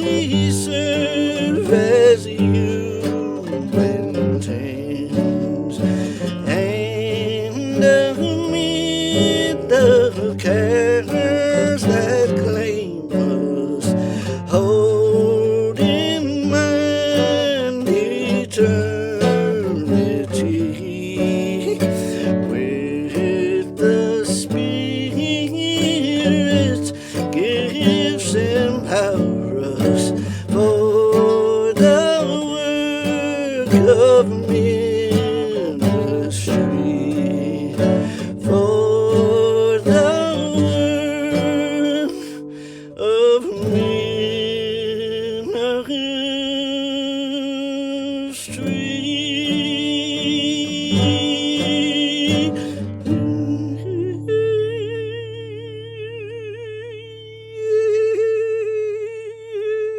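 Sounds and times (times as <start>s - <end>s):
gospel hymn with acoustic guitar: 0.0s - 59.9s.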